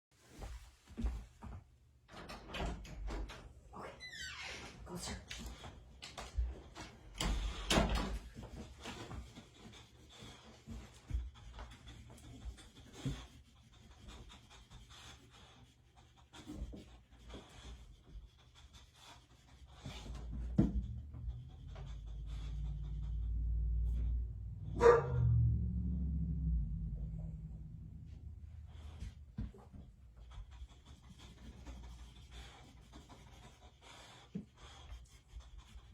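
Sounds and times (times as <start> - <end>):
dog panting: 5.0 - 25.2, 28.1 - 35.9
low rumble: 20.0 - 30.0.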